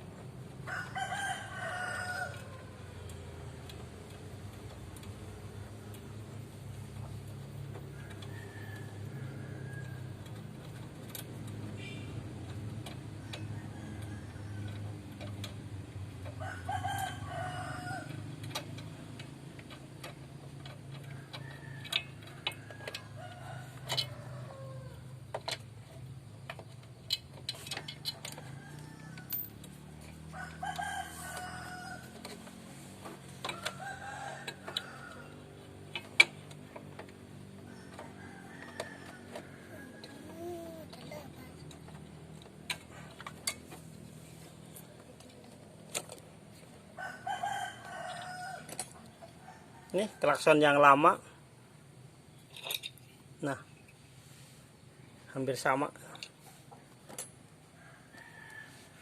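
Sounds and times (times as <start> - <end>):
rooster crowing: 0.6 - 3.0, 7.8 - 10.2, 13.2 - 15.1, 16.4 - 18.4, 21.0 - 25.2, 27.8 - 35.9, 37.4 - 41.5, 46.9 - 50.6, 57.7 - 59.0.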